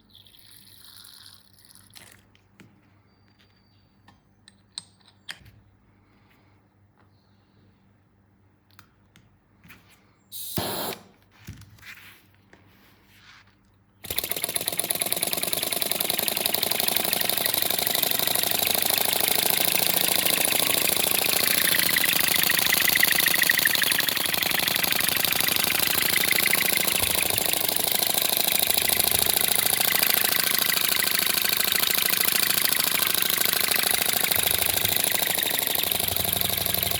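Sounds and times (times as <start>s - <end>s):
model helicopter engine running: 0.0s - 1.8s, 14.0s - 36.9s.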